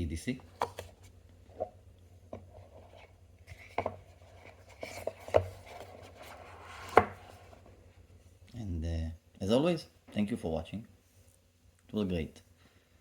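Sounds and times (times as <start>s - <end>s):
objects knocking and clicking on desk: 2.3s - 6.0s, 6.8s - 7.4s.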